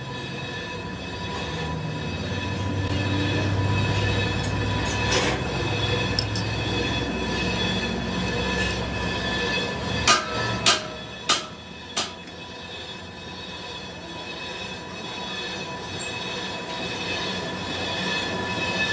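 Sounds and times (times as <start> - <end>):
machinery running with squealing whine: 0.0 - 18.9
ringing metal strikes: 10.0 - 12.4.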